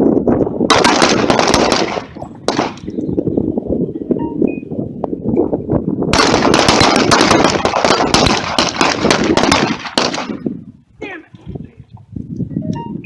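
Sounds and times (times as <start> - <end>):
rapid pistol fire: 0.7 - 2.9, 6.1 - 10.5.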